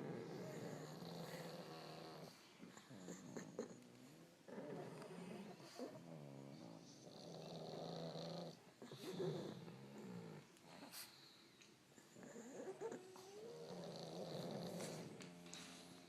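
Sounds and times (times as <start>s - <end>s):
dogs snoring: 0.0s - 16.0s.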